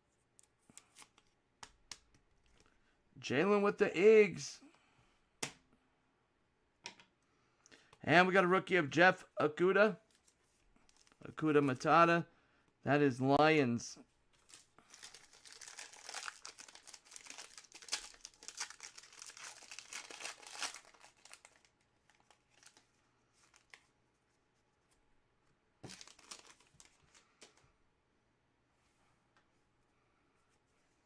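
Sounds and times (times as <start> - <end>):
wrapper crinkling and tearing: 14.4 - 23.8, 25.8 - 27.0.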